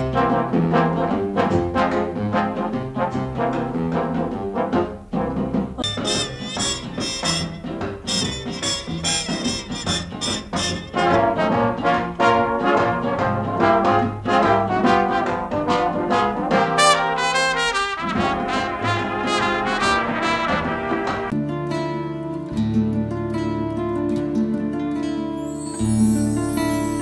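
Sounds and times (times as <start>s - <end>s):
jazzy big band brass music: 0.0s - 21.4s.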